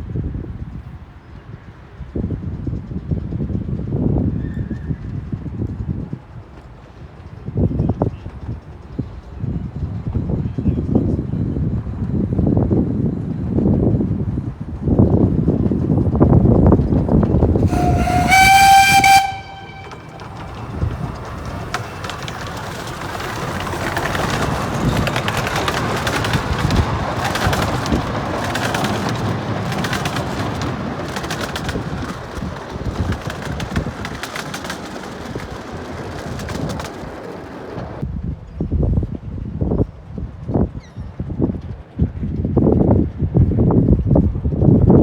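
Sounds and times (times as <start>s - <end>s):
train running by: 0.0s - 40.6s
wind buffeting microphone: 0.0s - 45.0s
wheels clicking over rails: 12.0s - 38.0s
train whistle: 17.6s - 20.9s.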